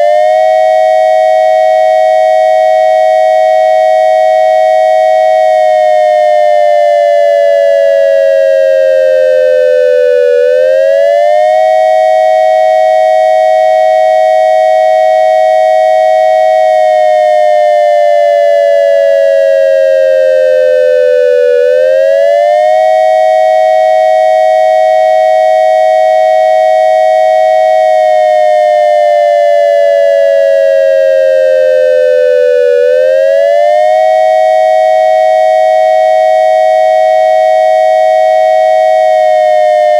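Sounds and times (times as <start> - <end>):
dual-tone electronic siren: 0.0 - 39.9.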